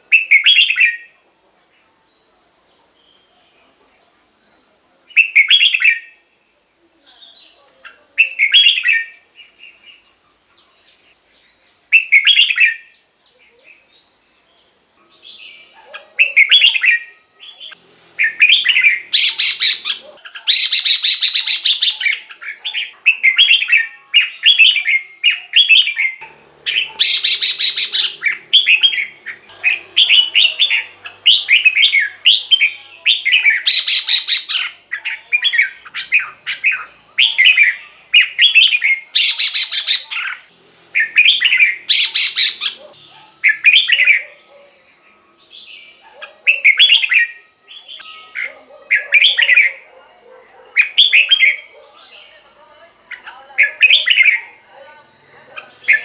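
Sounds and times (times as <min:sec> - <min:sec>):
bird whistled song phrases: 0:00.0 - 0:01.1, 0:05.1 - 0:06.3, 0:08.2 - 0:10.0, 0:11.9 - 0:12.9, 0:15.3 - 0:45.0, 0:45.6 - 0:49.9, 0:50.8 - 0:51.7, 0:53.1 - 0:54.6
harsh bird calls: 0:00.0 - 0:01.2, 0:07.2 - 0:56.0.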